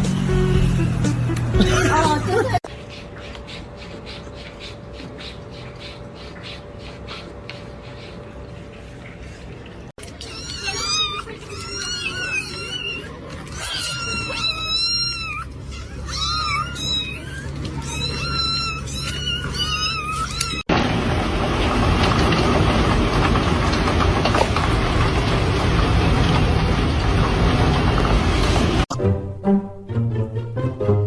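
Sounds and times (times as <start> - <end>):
kitten meowing: 10.1 - 20.6.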